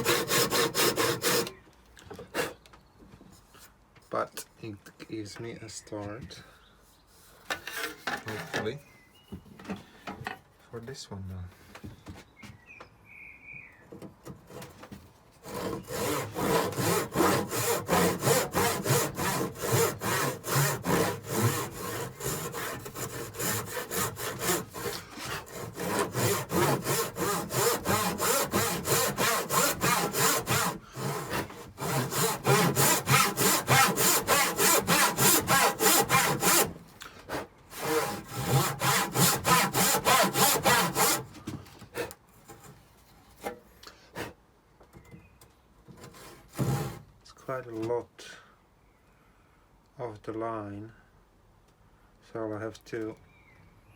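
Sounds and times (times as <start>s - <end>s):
handsaw ripping timber: 0.0s - 1.6s, 15.4s - 42.7s, 46.0s - 47.1s.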